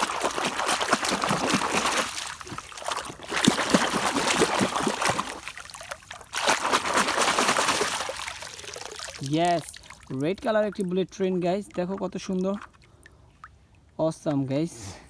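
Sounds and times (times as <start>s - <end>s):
water trickling and splashing: 0.0s - 14.6s.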